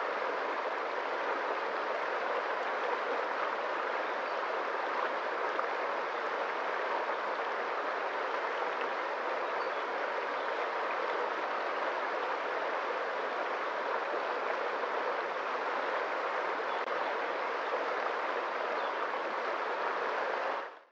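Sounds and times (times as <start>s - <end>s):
water streaming and splashing: 0.0s - 20.9s.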